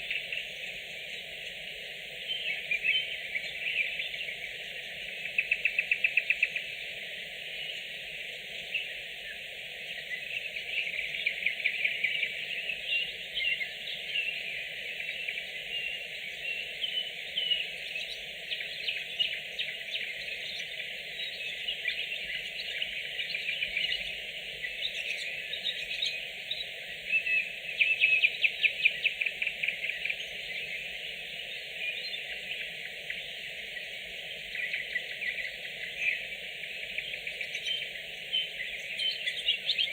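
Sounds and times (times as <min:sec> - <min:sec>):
nightingales singing: 0:00.0 - 0:39.9.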